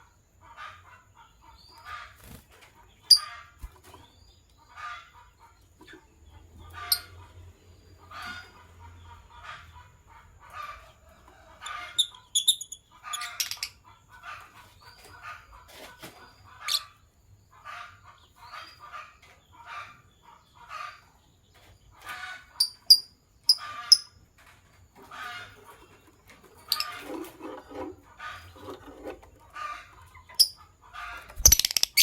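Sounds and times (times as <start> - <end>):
lovebirds chirping and chattering: 0.4 - 32.0.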